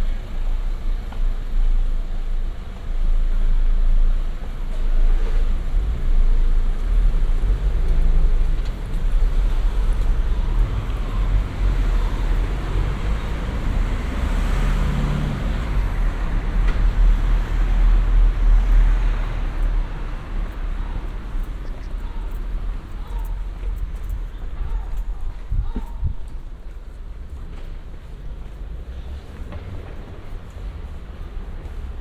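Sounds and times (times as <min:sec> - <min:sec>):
road traffic rumble: 0:00.0 - 0:32.0.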